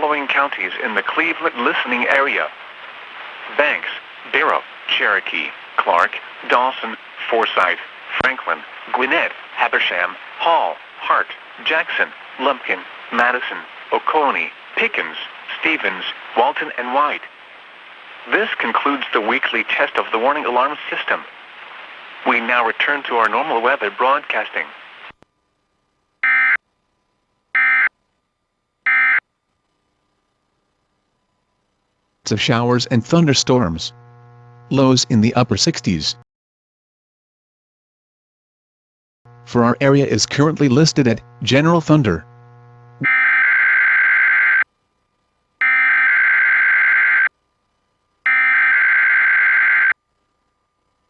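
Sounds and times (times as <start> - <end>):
buzzy digital data bursts: 39.3 - 44.6.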